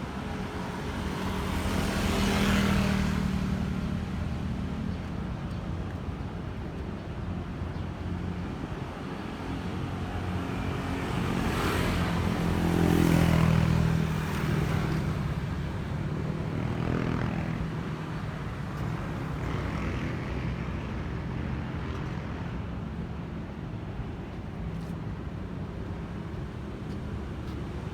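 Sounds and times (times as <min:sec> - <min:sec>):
vehicles passing: 0:10.5 - 0:27.9.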